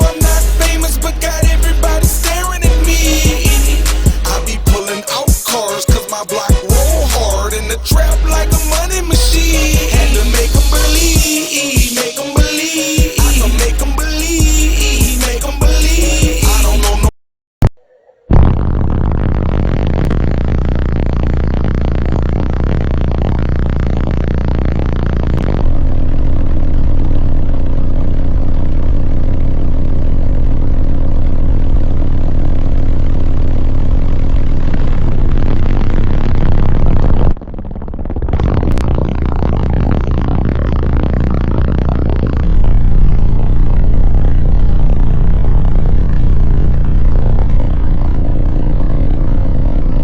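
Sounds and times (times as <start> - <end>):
loud bass-heavy music: 0.0 - 17.2, 18.3 - 50.0.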